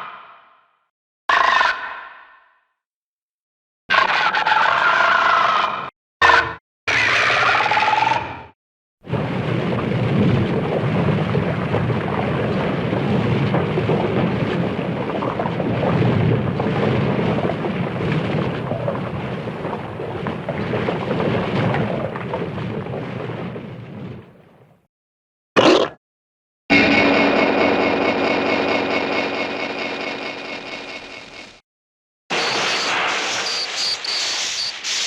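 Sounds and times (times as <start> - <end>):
dense rumbling monster noise: 9.0 - 24.4.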